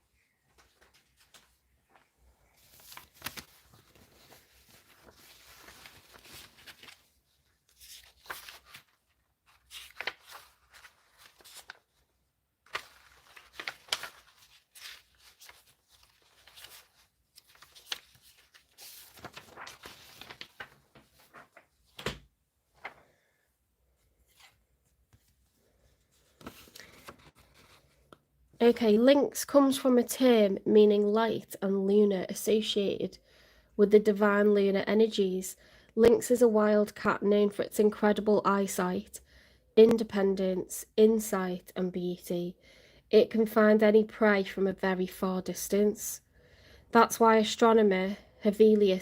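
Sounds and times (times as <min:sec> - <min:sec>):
rustling handling noise: 0:00.4 - 0:22.1, 0:24.0 - 0:28.2.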